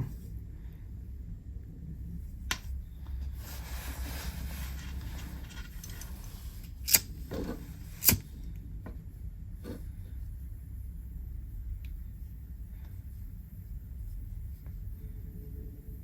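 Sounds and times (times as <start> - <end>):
low steady hum: 0.0 - 16.0
hands handling wires and tools: 4.2 - 8.3.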